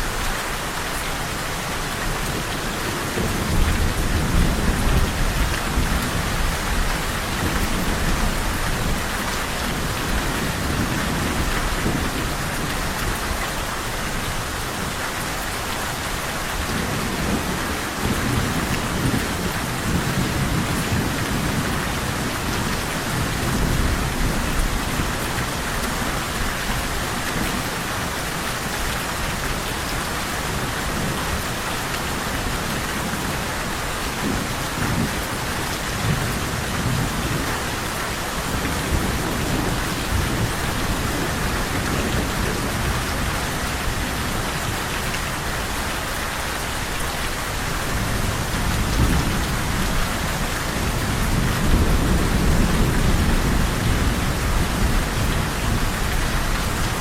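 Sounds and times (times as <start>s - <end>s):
steady rain falling: 0.0s - 57.0s
thunder rumbling: 2.2s - 9.1s, 34.2s - 45.7s, 47.0s - 57.0s.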